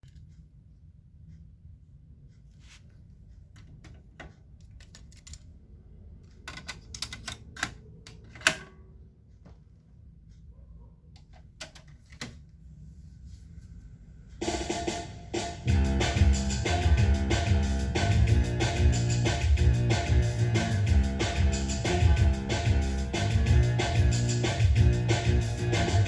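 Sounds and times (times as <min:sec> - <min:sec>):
music from tape: 0:14.4 - 0:26.0.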